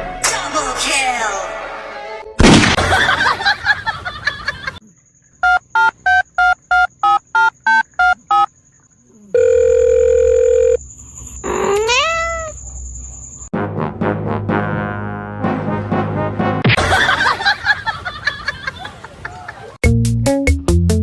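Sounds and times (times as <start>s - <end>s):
steady telephone tone: 9.4s - 10.8s.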